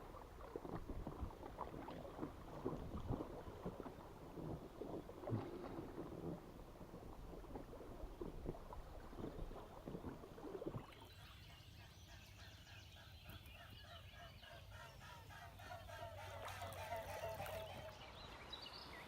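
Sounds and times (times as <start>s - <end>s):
waterfowl calling: 11.2s - 18.5s.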